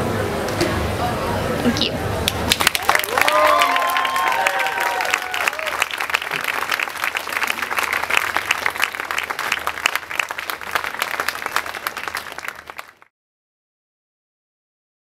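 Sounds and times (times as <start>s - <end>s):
audience applauding: 2.5s - 13.1s.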